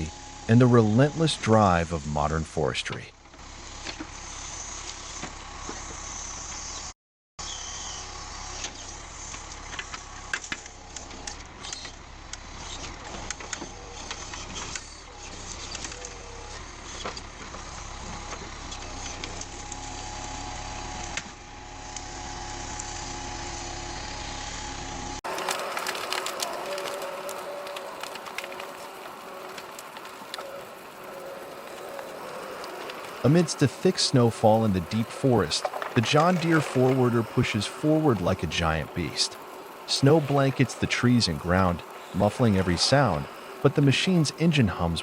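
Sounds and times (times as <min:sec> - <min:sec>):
heavy forestry machine running: 0:08.0 - 0:45.0
knocks and clunks of logs: 0:35.5 - 0:37.2.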